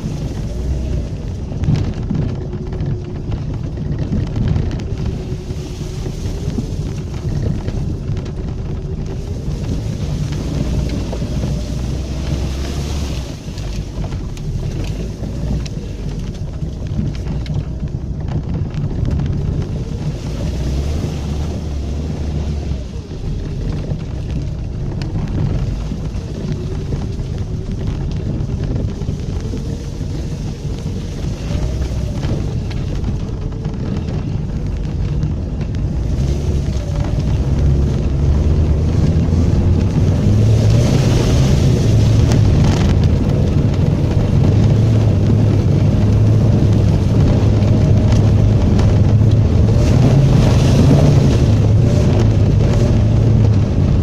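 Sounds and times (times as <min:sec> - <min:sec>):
car driving through mud: 0:00.0 - 0:54.0
car engine under load: 0:00.0 - 0:54.0.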